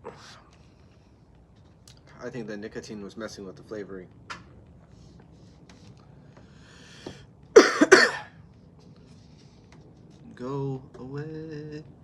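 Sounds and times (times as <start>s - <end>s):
man drawing breath: 6.1s - 7.3s
man coughing harshly: 7.6s - 8.3s.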